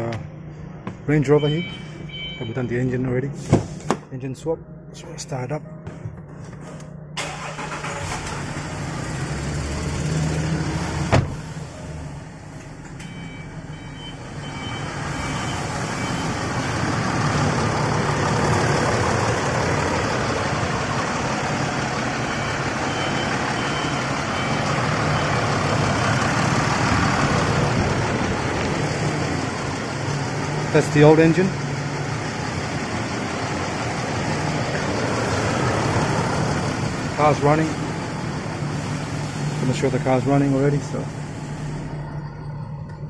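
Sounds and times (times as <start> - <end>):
short high warning beeps: 1.3 - 2.8, 13.0 - 16.4
car engine running: 16.0 - 43.0.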